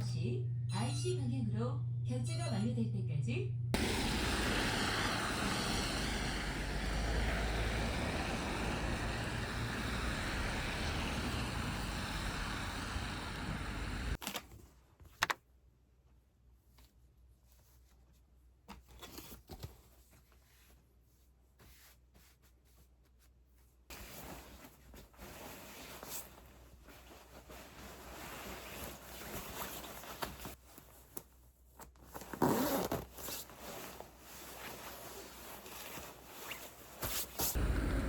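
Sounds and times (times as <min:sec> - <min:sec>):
fabric or packaging rustling: 0:23.9 - 0:37.6
zipper-like scraping: 0:32.2 - 0:37.6.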